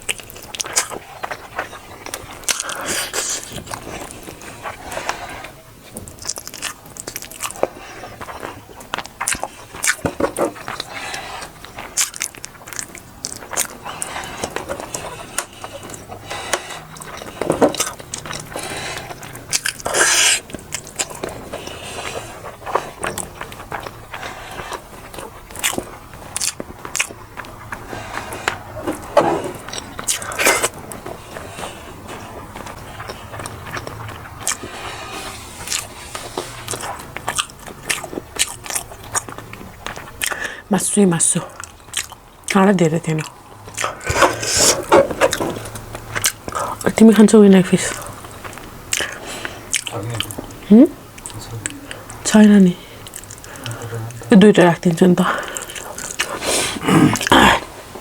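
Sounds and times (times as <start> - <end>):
person chewing food: 0.0 - 58.0
mouth clicks and smacks: 47.8 - 54.4, 55.2 - 57.7.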